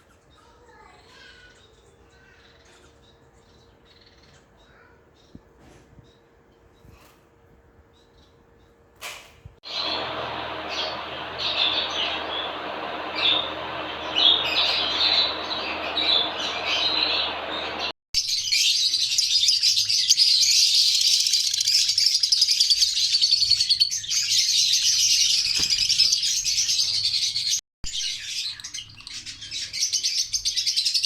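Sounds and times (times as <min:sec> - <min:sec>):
low background hum: 0:00.0 - 0:17.9
parrots chirping: 0:09.7 - 0:31.0.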